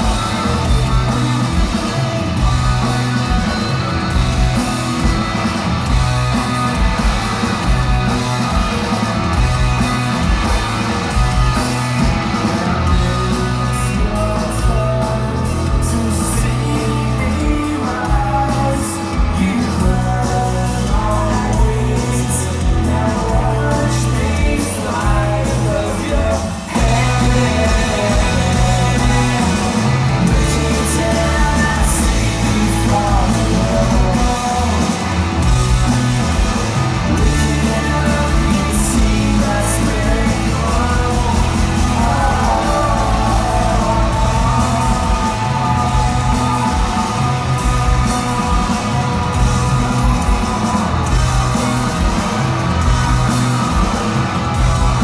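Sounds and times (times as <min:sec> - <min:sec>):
live rock band playing: 0:00.0 - 0:55.0
person singing: 0:11.6 - 0:36.2, 0:37.1 - 0:55.0.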